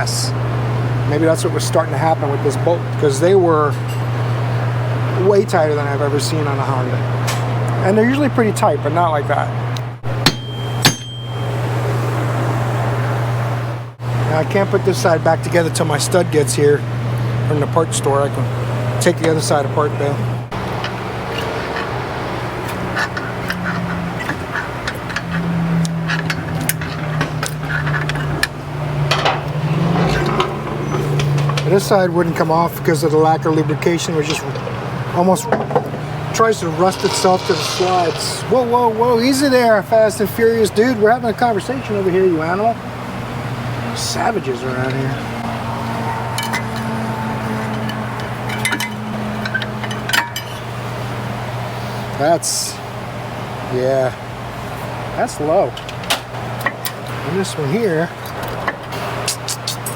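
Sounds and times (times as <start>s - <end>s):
low mechanical hum: 0.0s - 59.9s
metal tools clinking: 10.0s - 11.8s, 22.6s - 31.9s, 47.6s - 50.7s.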